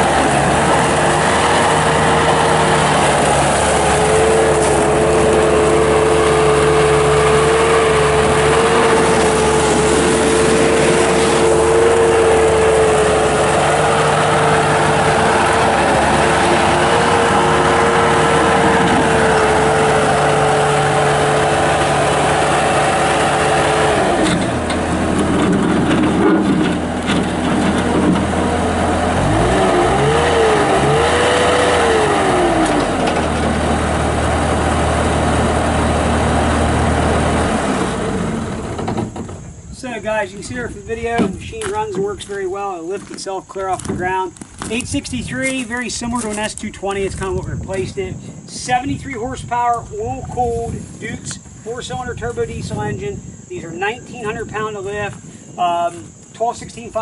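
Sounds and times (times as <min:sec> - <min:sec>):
diesel engine running at high revs: 0:00.0 - 0:42.4.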